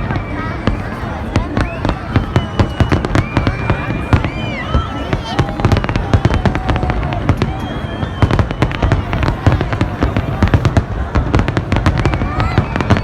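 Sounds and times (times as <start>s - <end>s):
fireworks bangs and crackling: 0.0s - 13.0s.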